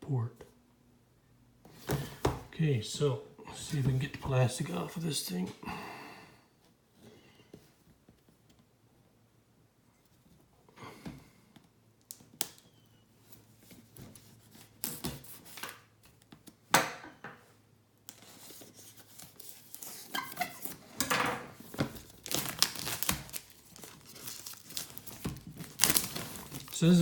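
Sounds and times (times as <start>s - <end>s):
plastic wrapping tearing: 19.0s - 20.8s, 21.7s - 27.0s.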